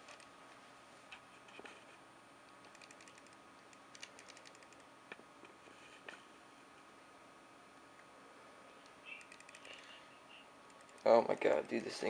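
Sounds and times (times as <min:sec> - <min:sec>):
faint clicks and clattering of parts: 0:00.0 - 0:06.3, 0:08.8 - 0:10.0.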